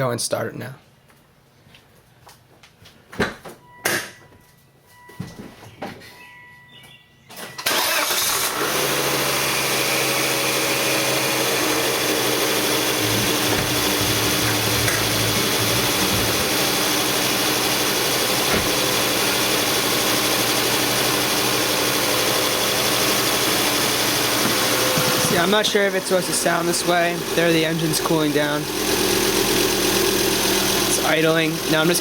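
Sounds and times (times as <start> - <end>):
car engine starting and idling: 7.4 - 32.0.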